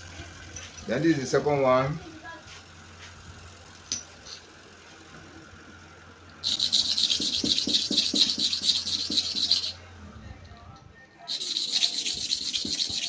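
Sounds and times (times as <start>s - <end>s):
blade scraping on sharpening stone: 6.4s - 9.8s, 11.3s - 13.0s.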